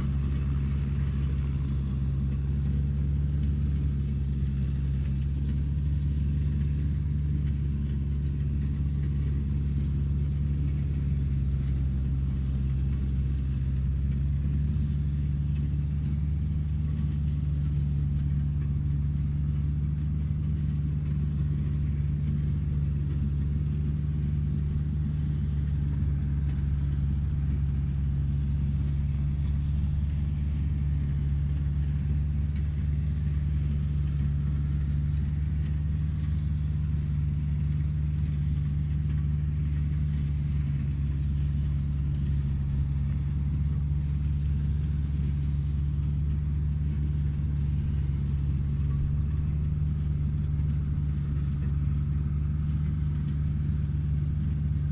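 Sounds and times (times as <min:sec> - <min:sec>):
tractor engine running: 0:00.0 - 0:54.9
faint high whine: 0:17.0 - 0:54.9.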